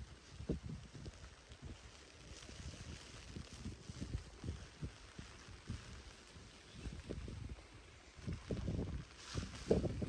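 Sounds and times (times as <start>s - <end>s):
wind buffeting microphone: 0.2s - 1.8s, 8.2s - 10.0s.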